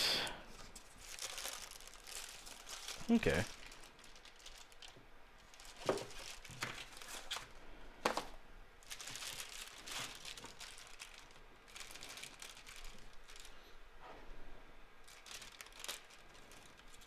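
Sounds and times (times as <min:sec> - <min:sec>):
packaging crinkling and tearing: 0:00.5 - 0:13.6, 0:15.0 - 0:17.0.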